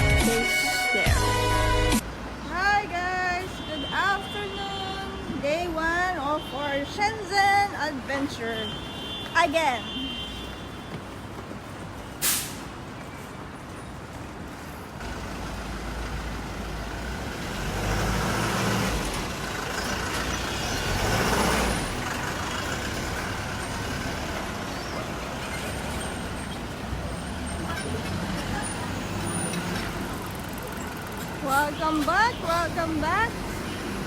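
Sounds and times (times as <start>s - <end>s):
passing vehicles engine and tyre noise: 10.1s - 34.0s
short sharp hiss: 12.2s - 12.7s.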